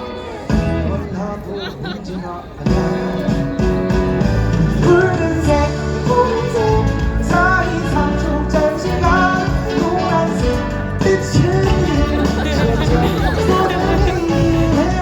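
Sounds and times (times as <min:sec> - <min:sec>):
live pop-rock band: 0:00.0 - 0:15.0
person singing: 0:04.7 - 0:15.0.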